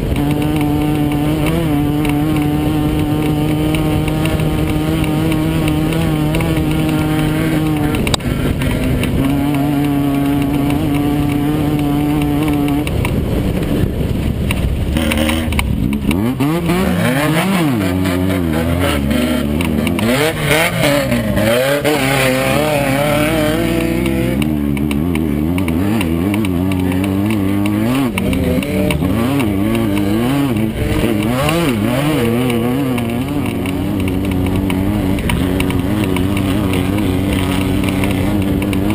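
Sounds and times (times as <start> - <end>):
buggy engine revving: 0.0 - 38.9.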